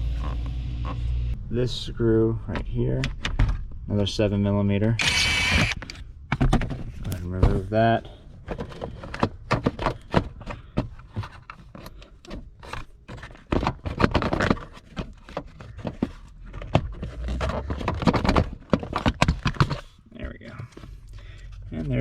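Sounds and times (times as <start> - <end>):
scraping under dashboard: 6.6 - 22.0.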